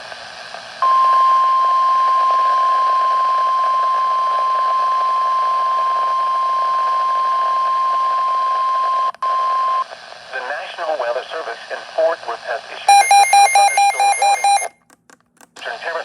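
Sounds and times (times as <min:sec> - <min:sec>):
steady high alarm tone: 0:12.9 - 0:14.7.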